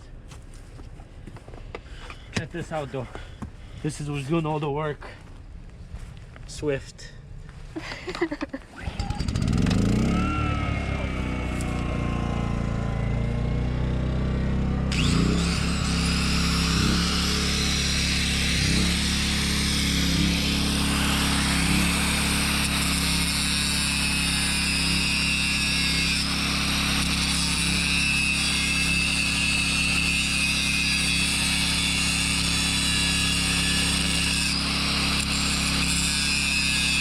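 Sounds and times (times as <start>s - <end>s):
angle grinder cutting metal: 8.8s - 13.1s, 14.8s - 37.0s.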